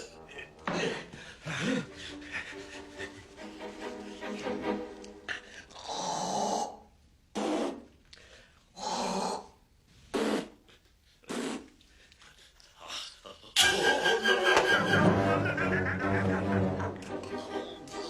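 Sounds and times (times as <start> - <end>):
music: 0.0 - 5.6, 13.6 - 18.0.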